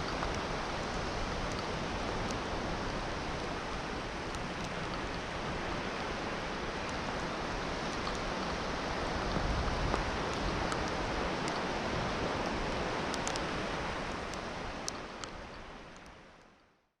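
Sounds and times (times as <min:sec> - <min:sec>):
faint high ticks: 0:00.0 - 0:00.5, 0:01.4 - 0:02.4, 0:09.2 - 0:11.7, 0:12.4 - 0:13.6, 0:14.2 - 0:16.7
sea surf: 0:00.0 - 0:16.2
wind: 0:00.0 - 0:17.0.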